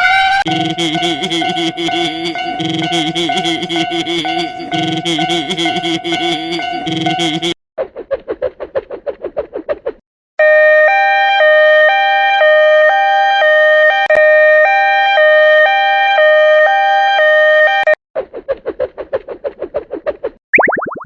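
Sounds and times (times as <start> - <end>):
railroad crossing warning bell: 0.5 - 7.5.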